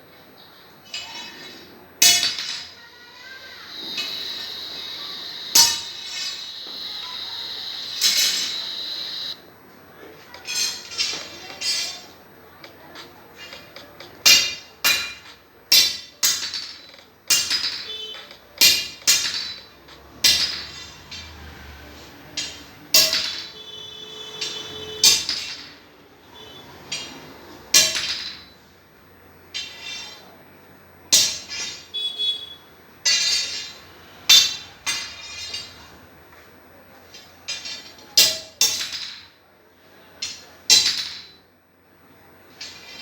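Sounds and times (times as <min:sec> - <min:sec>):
hammer striking steel: 0:02.0 - 0:02.8, 0:03.7 - 0:09.4, 0:14.3 - 0:21.5, 0:22.4 - 0:25.8, 0:26.9 - 0:28.6, 0:31.1 - 0:32.0, 0:33.0 - 0:35.8, 0:37.6 - 0:39.3.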